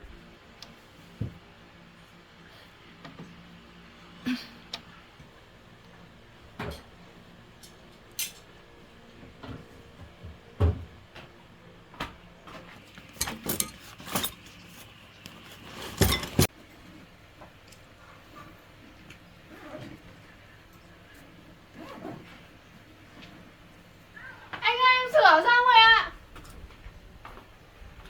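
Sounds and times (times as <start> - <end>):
knocks and clicks of tools: 12.9 - 14.6, 15.6 - 16.5.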